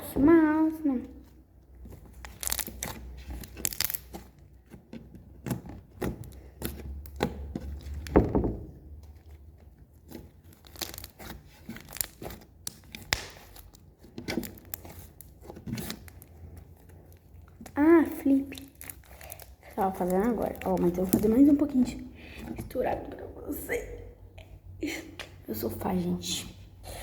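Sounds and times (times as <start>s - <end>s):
slime popping and crackling: 2.0s - 4.4s, 10.0s - 16.3s, 17.1s - 22.0s.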